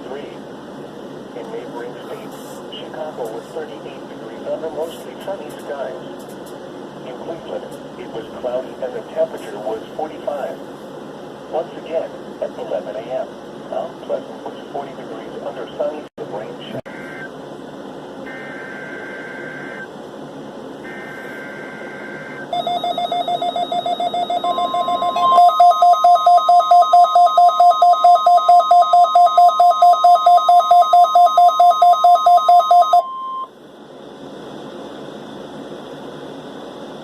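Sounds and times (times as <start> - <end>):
radio hiss: 1.4 - 10.8, 11.5 - 17.3, 20.8 - 22.5
steady alarm tone: 16.9 - 17.3, 18.2 - 19.9, 20.8 - 33.5
rapid alarm beeps: 18.3 - 19.9, 20.9 - 33.5
warbling data tones: 18.3 - 19.9, 20.8 - 33.1.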